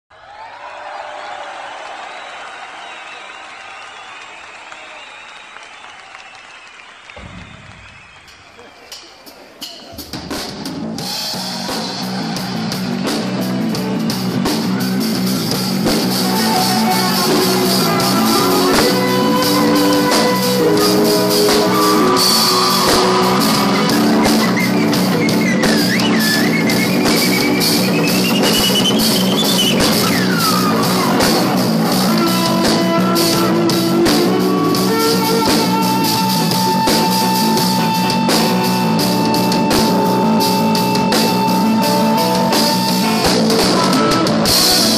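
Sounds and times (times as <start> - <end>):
live jazz-rock band: 9.9 - 44.9.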